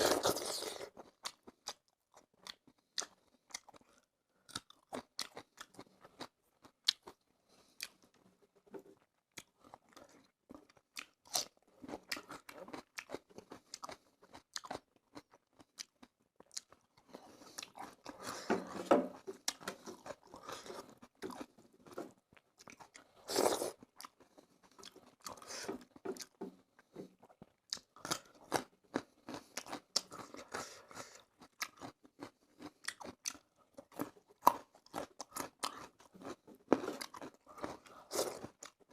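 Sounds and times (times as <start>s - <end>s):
person chewing and crunching food: 0.0s - 38.9s.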